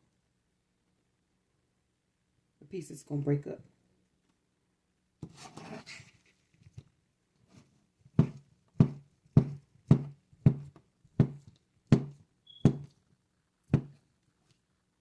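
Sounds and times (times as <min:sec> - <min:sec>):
knife chopping on cutting board: 0:08.2 - 0:12.9, 0:13.7 - 0:14.0.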